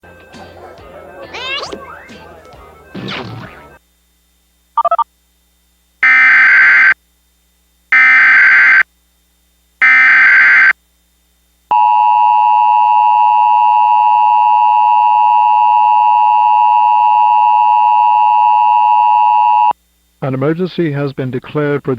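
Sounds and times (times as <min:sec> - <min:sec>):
digital data bursts: 0:04.8 - 0:05.0, 0:06.0 - 0:07.0, 0:08.0 - 0:08.8, 0:09.8 - 0:10.7
touch-tone beeps: 0:04.8 - 0:05.0
two-tone alert signal: 0:06.0 - 0:07.0, 0:08.0 - 0:08.8, 0:09.8 - 0:10.7.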